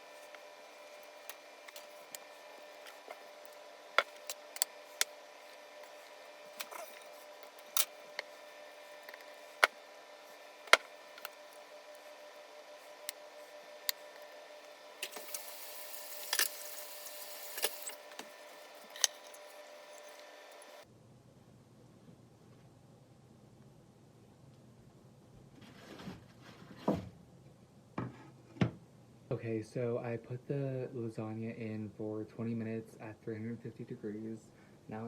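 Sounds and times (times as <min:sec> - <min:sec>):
scraping and rustling: 0:00.0 - 0:14.3
faint steady hum: 0:00.0 - 0:25.5.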